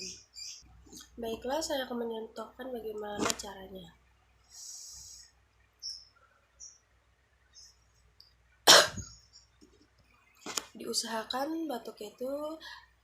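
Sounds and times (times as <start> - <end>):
breathy hiss: 4.4 - 5.4
person coughing: 8.7 - 9.2.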